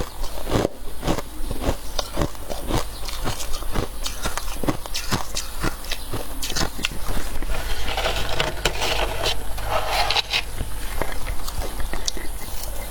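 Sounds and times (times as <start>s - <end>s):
frost being chewed: 0.0s - 7.6s, 10.3s - 12.9s.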